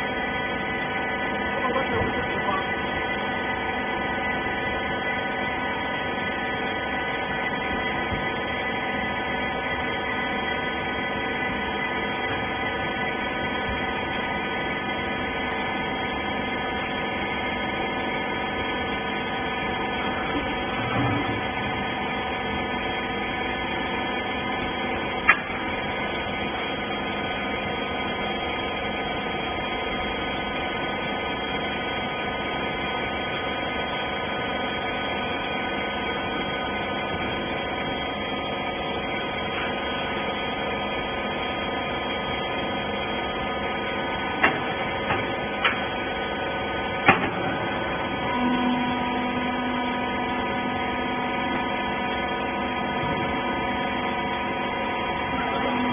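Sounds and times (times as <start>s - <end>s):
baler machine hum: 0.0s - 55.9s.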